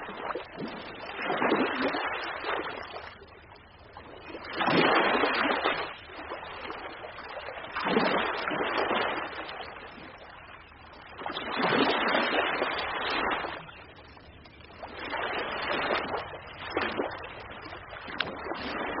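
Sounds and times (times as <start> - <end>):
ocean waves breaking: 4.3 - 19.0.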